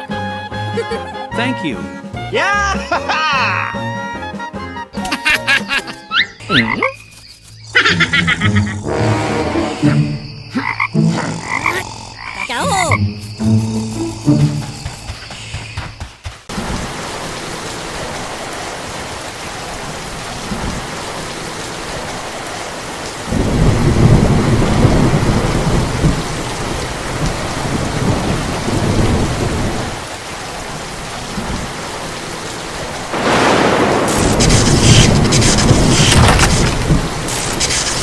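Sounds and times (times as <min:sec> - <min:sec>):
steady rain: 0:05.0 - 0:09.7, 0:12.5 - 0:38.0
thunder rumbling: 0:23.2 - 0:29.9, 0:33.1 - 0:37.3.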